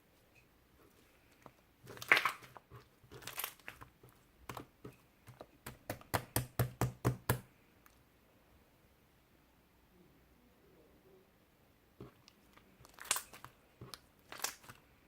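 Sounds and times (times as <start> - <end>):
slime squishing: 0.8 - 7.4, 12.0 - 14.9.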